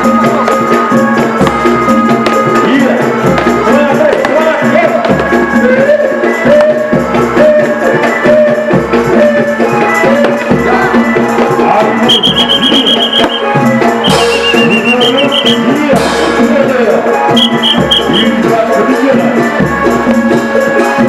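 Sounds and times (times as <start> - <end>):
folk music with drum and drone: 0.0 - 21.0
high rapid trill: 12.1 - 15.7, 17.4 - 18.5.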